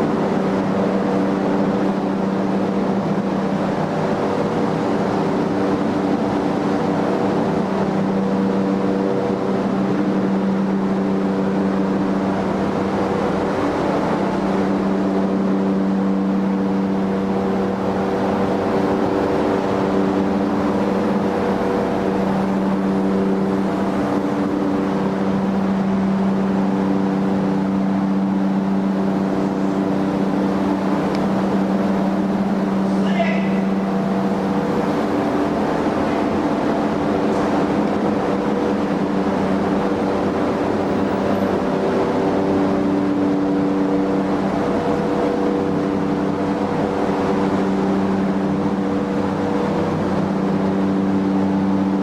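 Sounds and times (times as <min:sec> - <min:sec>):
steady machine hum: 0:00.0 - 0:52.0.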